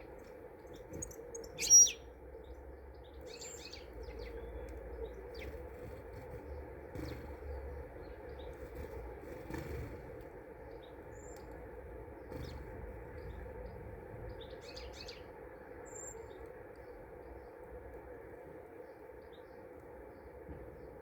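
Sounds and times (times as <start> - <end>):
low background hiss: 0.0 - 5.8
small birds chirping: 0.0 - 17.8.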